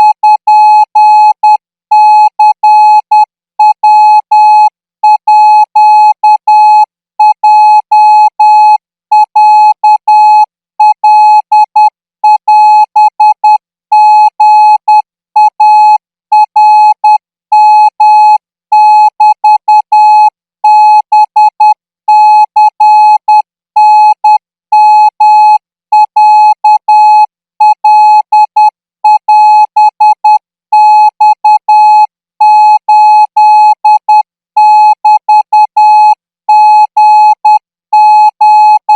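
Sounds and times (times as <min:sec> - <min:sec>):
morse code beeps: 0:29.0 - 0:31.7.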